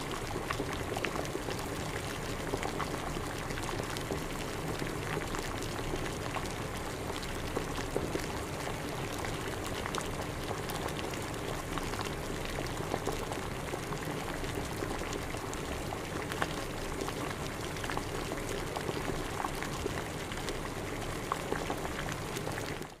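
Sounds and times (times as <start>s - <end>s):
water boiling and bubbling: 0.0s - 23.0s.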